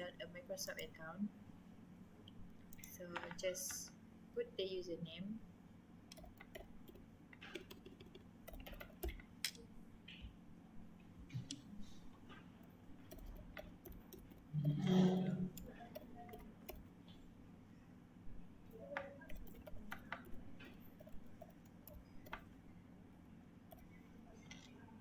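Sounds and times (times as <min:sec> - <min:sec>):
computer keyboard keystrokes: 0:06.1 - 0:09.6, 0:13.0 - 0:17.1, 0:18.8 - 0:22.6.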